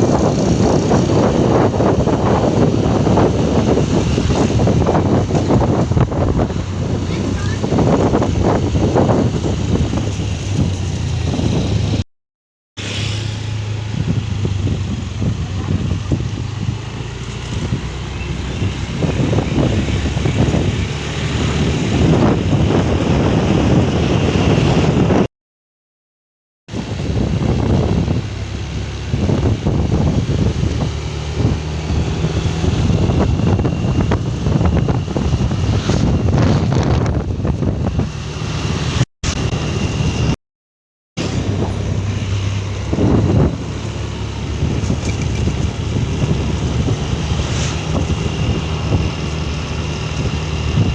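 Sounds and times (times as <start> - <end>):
road and wind noise: 0.0 - 12.1, 12.8 - 25.3, 26.7 - 40.4, 41.2 - 50.9
vehicle engine running: 13.0 - 23.5, 41.2 - 50.9.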